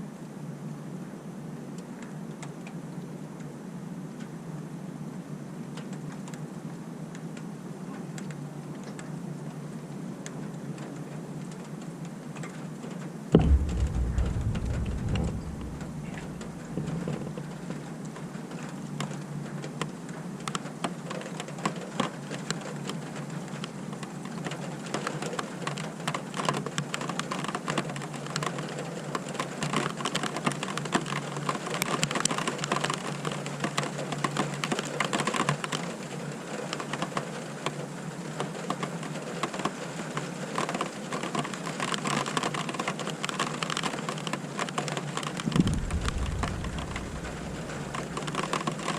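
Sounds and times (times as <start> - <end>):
rain hiss: 13.4 - 17.7, 45.5 - 48.9.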